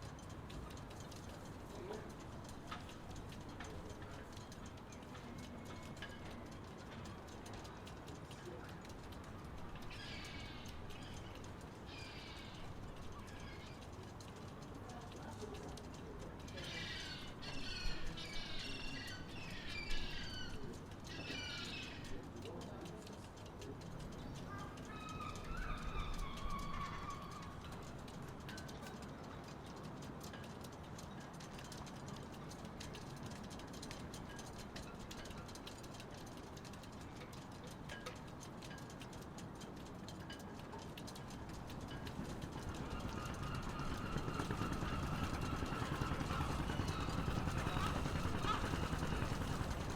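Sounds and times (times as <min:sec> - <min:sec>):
light clicks and ticks: 0:00.0 - 0:49.9
low harbour rumble: 0:00.0 - 0:49.9
songbird chirping: 0:16.5 - 0:22.5.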